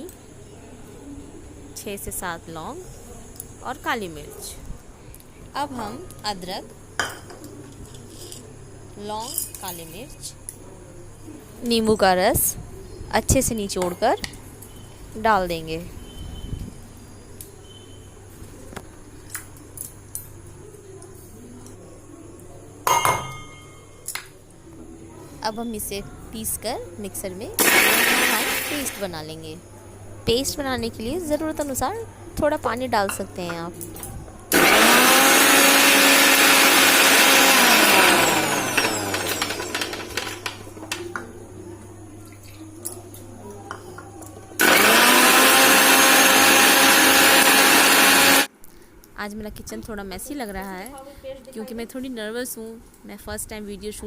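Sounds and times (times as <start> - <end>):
electric mixer grinder running: 27.6 - 29.0, 34.5 - 40.6, 44.6 - 48.5.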